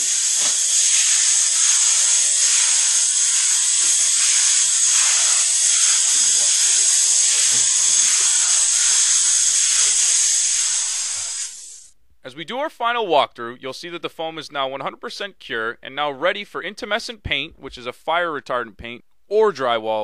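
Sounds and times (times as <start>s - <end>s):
spray foam gun hissing: 0.0s - 11.9s.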